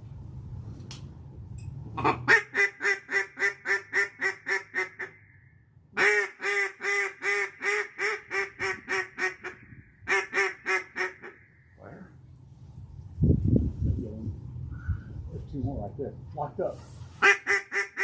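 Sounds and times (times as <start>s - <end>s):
duck call quacks: 2.0s - 5.4s, 6.0s - 11.6s, 17.2s - 18.0s.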